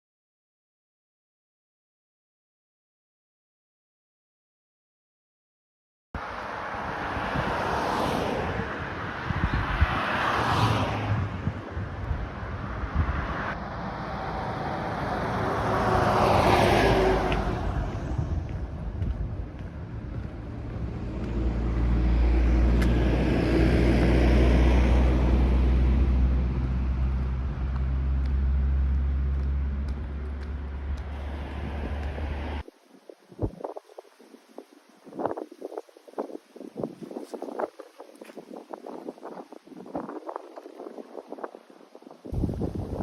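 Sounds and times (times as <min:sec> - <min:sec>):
low engine hum: 0:06.2 - 0:32.6
vehicle passing: 0:06.2 - 0:32.6.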